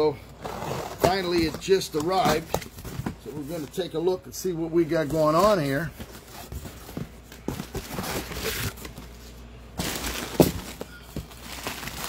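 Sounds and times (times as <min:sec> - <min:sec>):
box handling knocks and rustles: 0:00.3 - 0:03.8, 0:05.0 - 0:09.1, 0:09.8 - 0:11.9.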